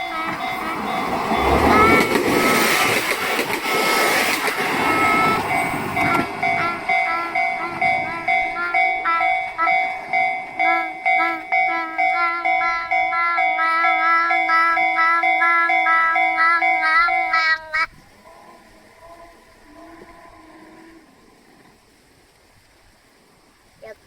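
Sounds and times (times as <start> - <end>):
level crossing bell ringing: 0.0 - 2.4, 4.8 - 17.6
train rumble: 0.0 - 20.2.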